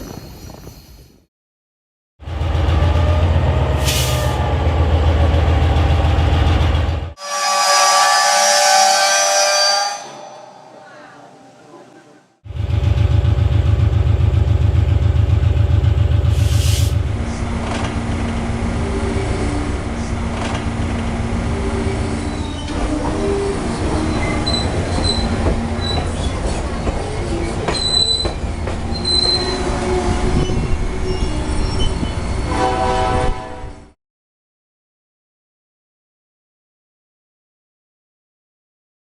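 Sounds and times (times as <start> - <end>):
train rumbling: 2.2 - 33.9
train wheel squeals: 7.2 - 11.4, 21.5 - 32.7
train horn chord: 7.2 - 12.4, 32.5 - 33.9.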